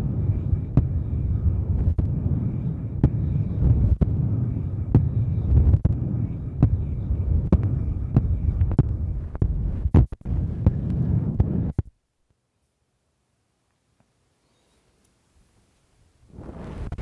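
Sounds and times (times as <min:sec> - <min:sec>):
rubbing on microphone rumble: 0:00.0 - 0:11.9, 0:16.2 - 0:17.0
sharp rhythmic clicks: 0:00.0 - 0:11.9.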